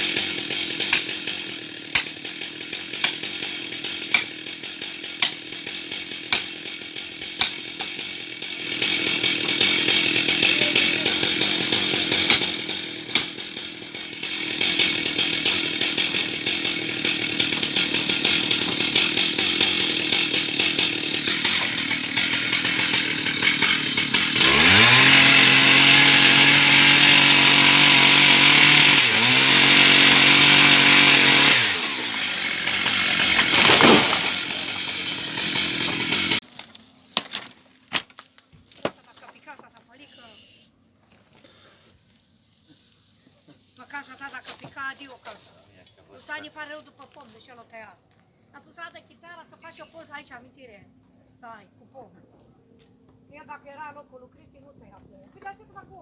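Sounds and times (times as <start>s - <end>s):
chainsaw running and revving: 0.0s - 36.4s.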